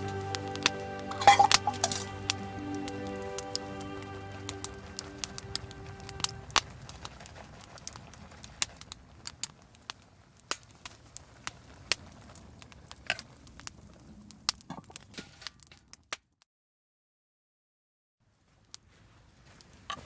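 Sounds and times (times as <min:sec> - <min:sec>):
low rush of burning: 0:00.0 - 0:13.9
campfire crackling and popping: 0:00.0 - 0:16.2.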